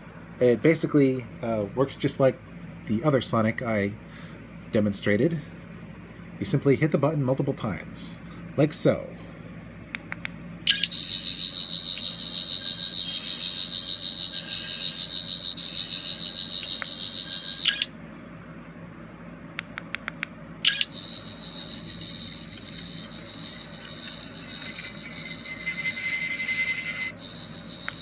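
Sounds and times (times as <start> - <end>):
toy button clicks: 10.0 - 10.8, 19.6 - 20.9
toy high pulsing electronic whirr: 10.7 - 17.9, 20.0 - 28.0.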